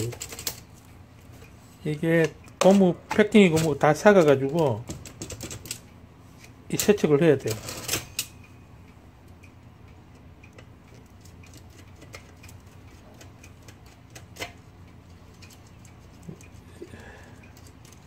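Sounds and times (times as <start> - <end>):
typewriter parts clicking: 0.0 - 0.7, 3.5 - 5.8.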